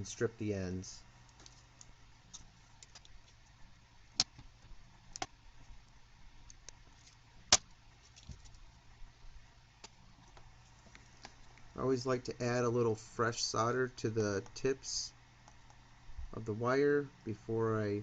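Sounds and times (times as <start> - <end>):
faint low hum: 0.0 - 18.0.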